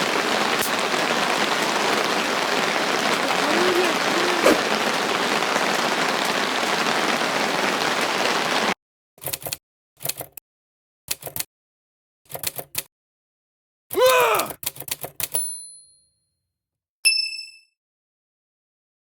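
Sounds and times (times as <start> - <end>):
heavy rain falling: 0.0 - 8.8.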